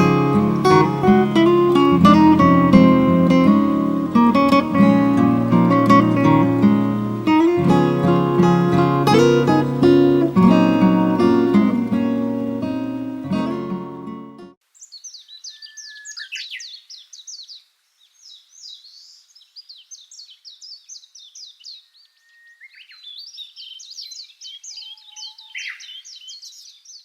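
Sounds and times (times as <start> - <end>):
acoustic guitar music: 0.0 - 14.6
songbirds chirping: 0.0 - 27.0.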